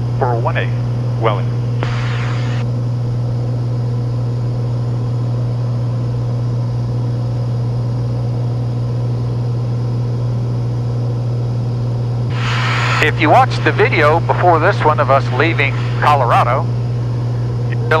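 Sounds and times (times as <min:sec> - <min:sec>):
airplane engine drone in cabin: 0:00.0 - 0:18.0
short hiss: 0:01.8 - 0:02.7, 0:12.3 - 0:13.8.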